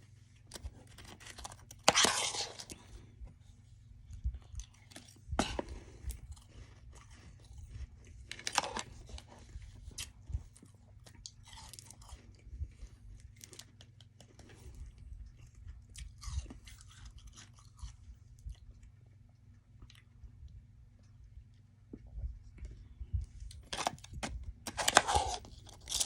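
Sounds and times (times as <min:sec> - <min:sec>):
person crunching ice: 0:00.8 - 0:02.8, 0:08.3 - 0:09.2, 0:23.6 - 0:26.0.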